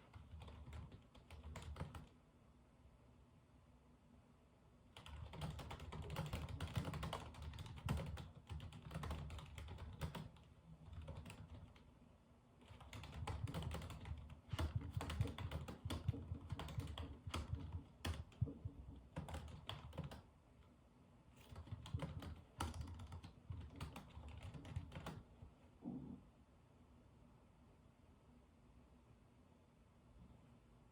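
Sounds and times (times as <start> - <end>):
computer keyboard typing: 0.0 - 2.2, 5.0 - 11.9, 12.6 - 20.3, 21.4 - 25.3.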